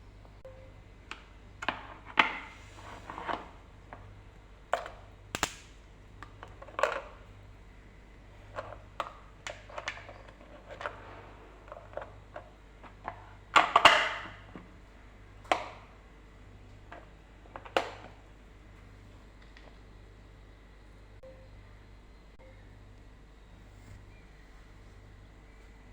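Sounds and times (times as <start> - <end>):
faint steady hum: 0.0 - 25.9.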